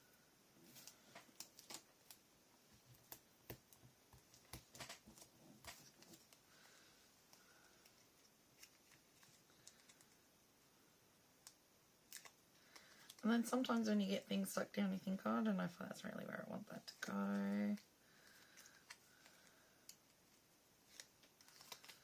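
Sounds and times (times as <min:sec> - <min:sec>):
paper rustling: 0:07.4 - 0:10.2, 0:20.3 - 0:22.0.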